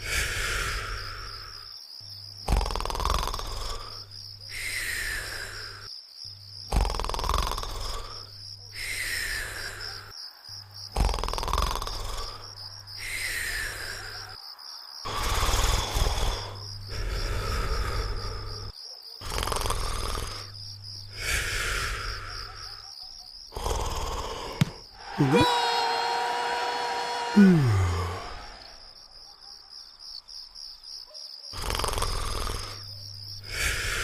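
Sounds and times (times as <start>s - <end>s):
crickets chirping: 0.0s - 34.0s
cartoon snoring with whistle: 2.4s - 5.9s, 6.7s - 10.1s, 10.9s - 14.4s, 15.1s - 22.8s, 23.5s - 25.5s, 27.4s - 28.8s, 31.5s - 34.0s.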